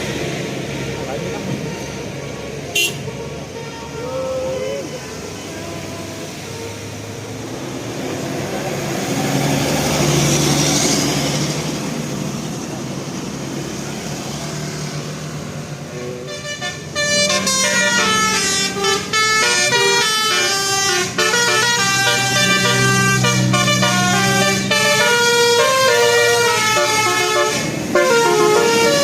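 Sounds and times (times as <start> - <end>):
bus engine passing: 0.0 - 29.0
musical horn tune: 2.8 - 4.0, 16.2 - 29.0.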